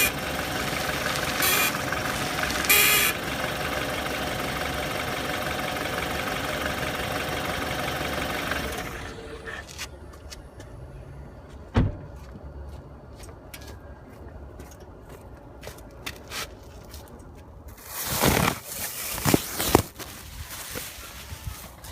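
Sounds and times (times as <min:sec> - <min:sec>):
car engine running: 0:00.0 - 0:13.4
thump: 0:11.7 - 0:12.1.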